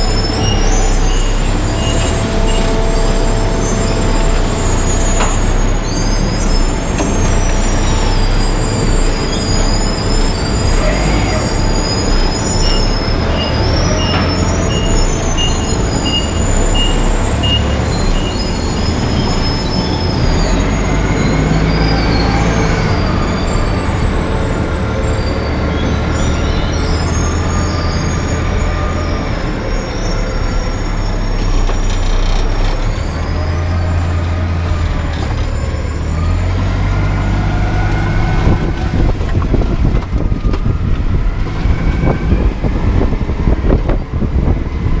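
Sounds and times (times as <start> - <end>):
high wavering squeals: 0.0 - 34.8
tractor diesel engine: 0.0 - 45.0.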